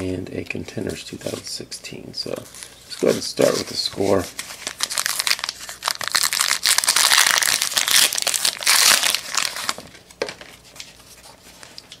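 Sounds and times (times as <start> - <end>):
card pack wrapper crinkling: 4.3 - 10.0.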